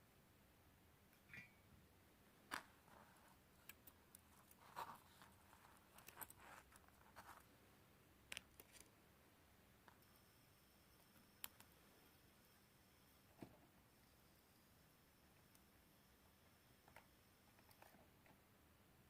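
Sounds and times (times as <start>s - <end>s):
small scratches and clicks: 2.5s - 7.5s, 8.3s - 8.9s, 10.9s - 11.8s, 16.8s - 18.4s.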